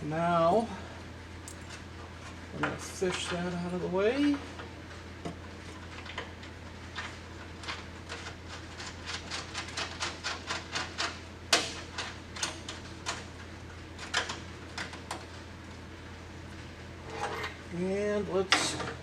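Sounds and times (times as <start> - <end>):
steady low hum: 0.0 - 9.1.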